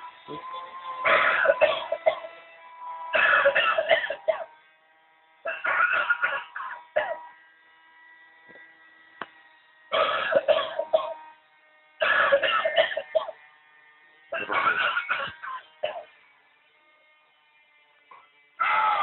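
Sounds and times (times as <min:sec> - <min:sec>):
recorded coughing through speaker: 0:01.0 - 0:02.4, 0:03.1 - 0:04.6, 0:05.5 - 0:07.2, 0:09.9 - 0:11.2, 0:12.0 - 0:13.4, 0:14.3 - 0:16.2.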